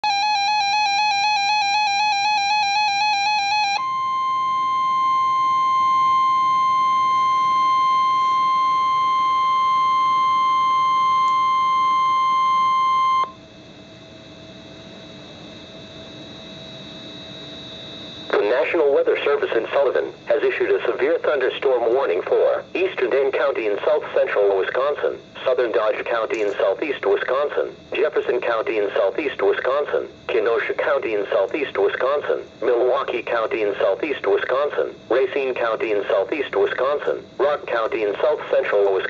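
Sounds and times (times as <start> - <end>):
warbling electronic alarm: 0.0 - 27.6
steady warning tone: 0.0 - 39.0
faint radio hiss: 18.3 - 39.0.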